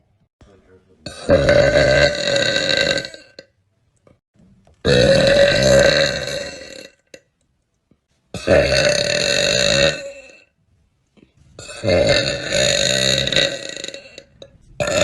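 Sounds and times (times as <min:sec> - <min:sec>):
woman burping: 0:01.1 - 0:03.5, 0:08.4 - 0:10.5.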